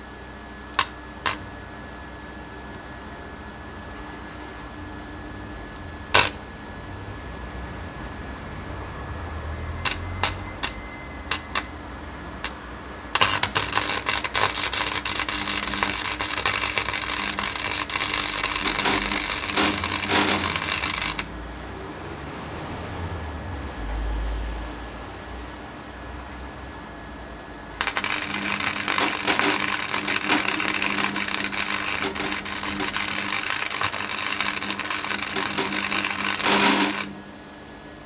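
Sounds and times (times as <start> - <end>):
welding arc: 0.7 - 1.5, 6.1 - 6.5, 9.8 - 11.7, 12.4 - 21.4, 27.7 - 37.2.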